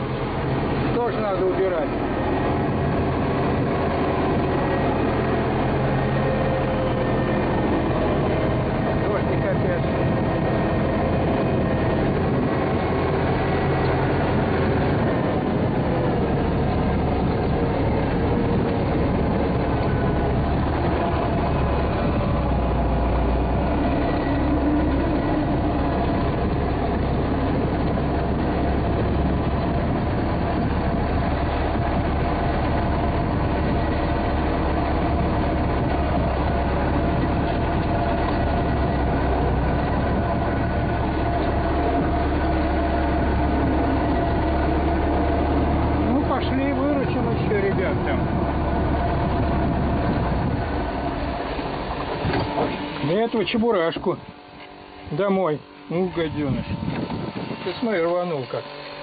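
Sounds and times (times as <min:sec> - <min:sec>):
vehicle engine droning: 0:00.0 - 0:59.0.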